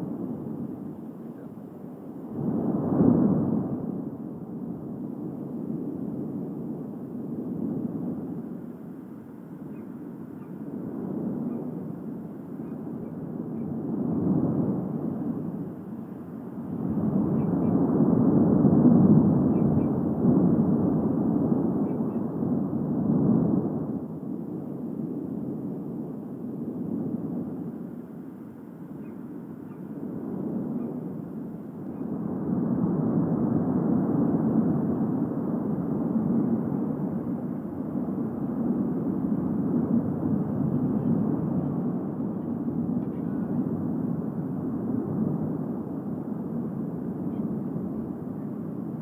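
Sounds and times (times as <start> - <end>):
volcano rumbling: 29.4 - 49.0.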